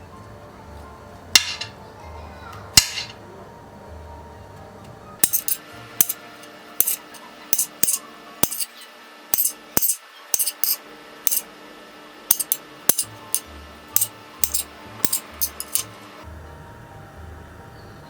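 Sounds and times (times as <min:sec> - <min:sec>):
faint background music: 0:00.0 - 0:18.0
utensils clinking: 0:01.4 - 0:01.8, 0:05.2 - 0:11.5, 0:12.3 - 0:15.9.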